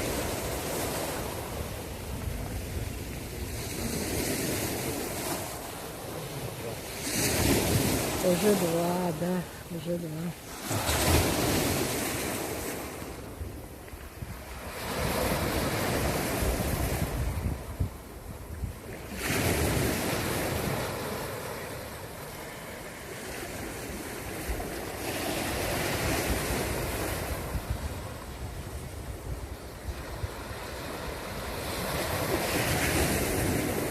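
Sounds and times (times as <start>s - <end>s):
sea surf washing in: 0.0s - 33.9s.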